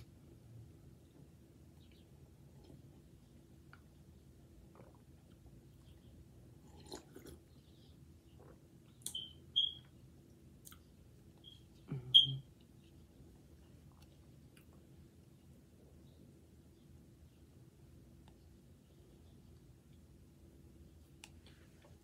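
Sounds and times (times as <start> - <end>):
person chewing noodles: 6.5 - 7.7.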